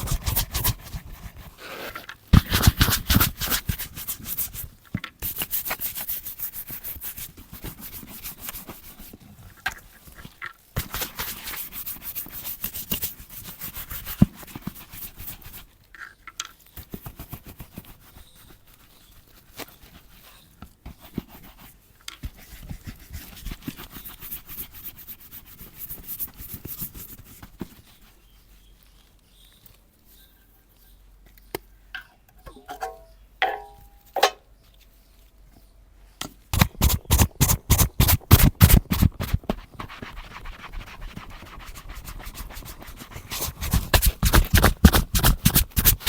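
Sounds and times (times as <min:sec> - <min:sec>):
brush scrubbing leather boot: 0:00.0 - 0:09.1, 0:10.8 - 0:15.6, 0:20.9 - 0:29.1, 0:36.6 - 0:46.0.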